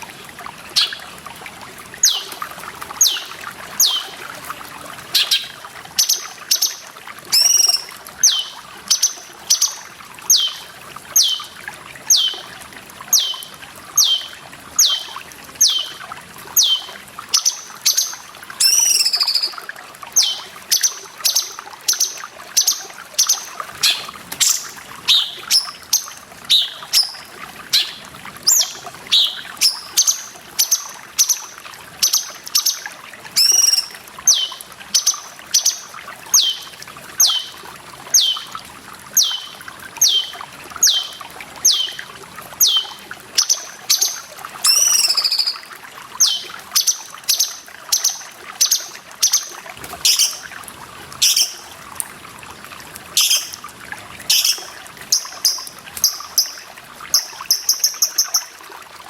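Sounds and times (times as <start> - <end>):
trickling water: 0.0 - 59.0
bird calling with sliding notes: 3.0 - 4.2, 5.2 - 11.5, 13.1 - 16.0, 16.6 - 19.6, 20.2 - 31.4, 33.4 - 35.8, 38.2 - 38.5, 39.2 - 42.0, 42.6 - 49.4, 54.3 - 56.6.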